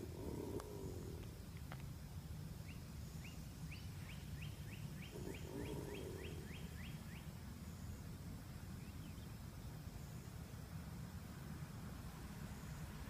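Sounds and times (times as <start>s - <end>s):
alligator rumbling call: 0.0s - 1.4s, 5.0s - 7.2s.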